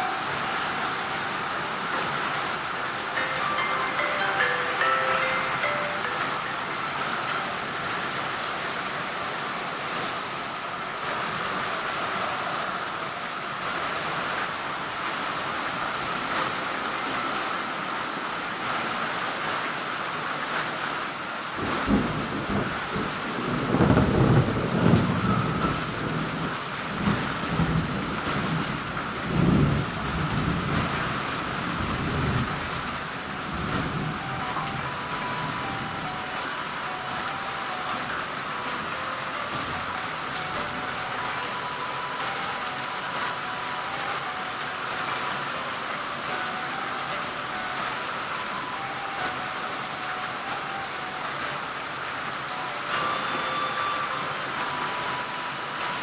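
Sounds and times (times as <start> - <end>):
heavy rain falling: 0.0 - 56.0
rolling thunder: 21.6 - 32.9.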